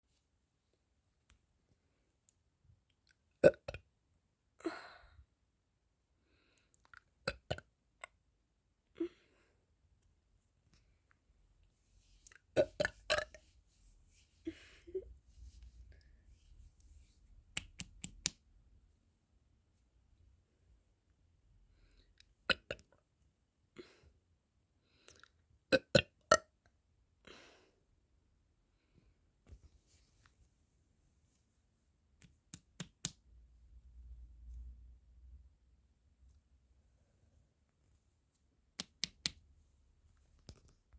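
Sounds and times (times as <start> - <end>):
person burping: 3.4 - 3.8, 12.6 - 13.4, 22.5 - 22.8
mouth clicks and gulps: 6.7 - 8.2, 12.2 - 13.4, 22.5 - 22.9.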